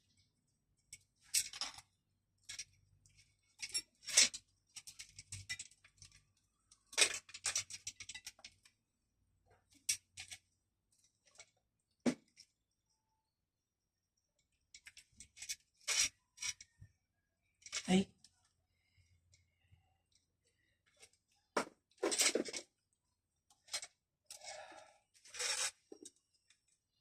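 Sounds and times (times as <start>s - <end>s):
metal parts clicking and rattling: 0.9s - 8.8s, 9.7s - 10.5s, 14.7s - 16.8s, 17.6s - 18.3s, 22.0s - 22.6s, 23.5s - 26.8s.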